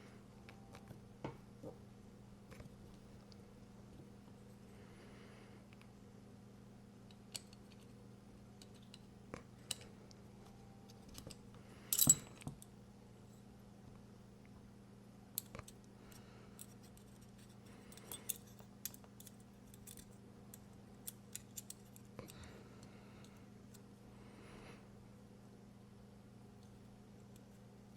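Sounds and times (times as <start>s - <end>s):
faint steady hum: 0.0s - 27.9s
metal tools clinking on surface: 11.9s - 12.5s.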